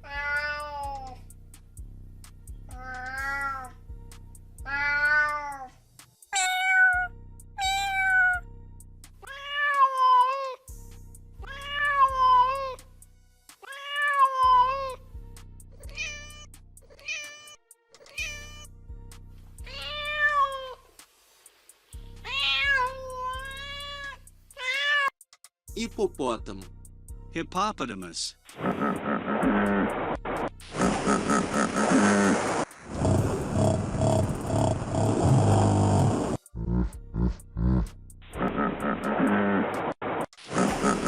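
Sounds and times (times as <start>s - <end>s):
cat meowing: 0.0s - 1.2s, 2.7s - 3.7s, 4.6s - 5.8s, 6.4s - 8.5s, 9.2s - 10.6s, 11.4s - 12.8s, 13.6s - 15.0s, 15.8s - 18.7s, 19.6s - 20.8s, 22.2s - 25.1s
background music: 0.0s - 24.9s, 25.7s - 38.8s.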